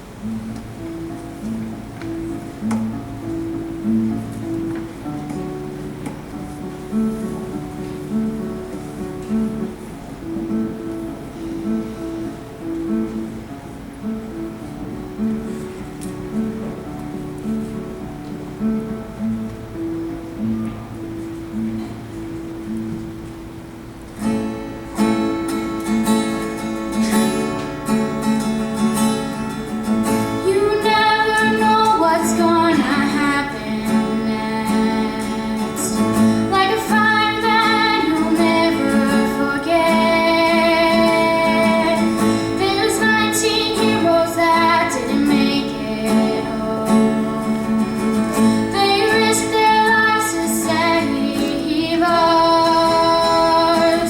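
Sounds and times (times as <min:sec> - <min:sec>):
guitar accompaniment: 0:00.0 - 0:54.0
woman singing slow song: 0:30.3 - 0:54.0.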